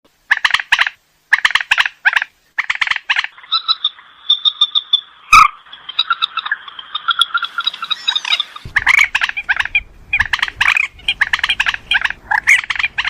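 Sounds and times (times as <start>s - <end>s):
waterhen harsh croaking calls: 0.3s - 13.0s
high piping: 3.4s - 13.0s.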